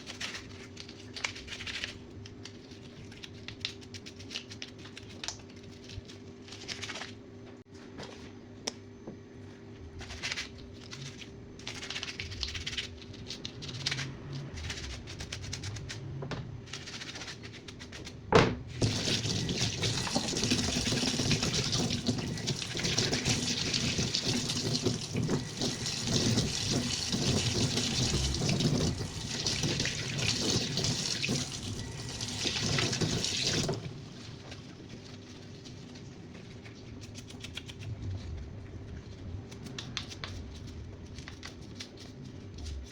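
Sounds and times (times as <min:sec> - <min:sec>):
tap water running: 0:18.7 - 0:34.6.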